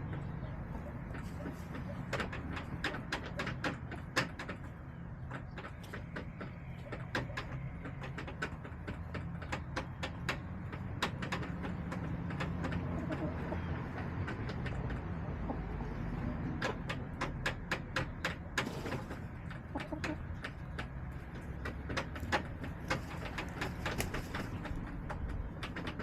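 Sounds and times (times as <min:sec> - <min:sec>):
chickens pecking on plastic: 0:00.0 - 0:26.0.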